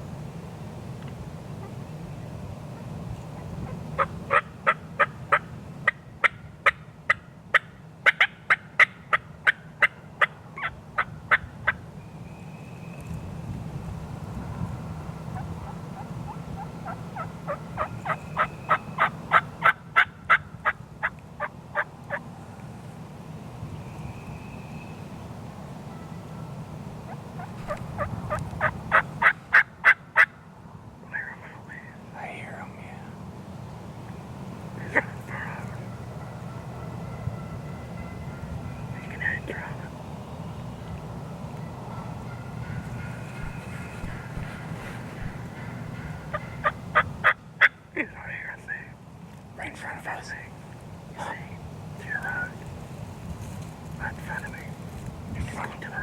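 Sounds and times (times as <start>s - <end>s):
low background noise: 0.0s - 56.0s
turkey yelping: 2.8s - 11.4s, 15.4s - 22.2s, 27.1s - 30.4s, 41.9s - 47.8s.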